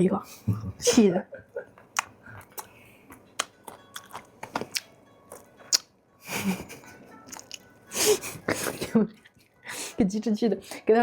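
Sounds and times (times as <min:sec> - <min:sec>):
chewing and utensil clicks: 0:02.0 - 0:05.9, 0:07.3 - 0:07.7.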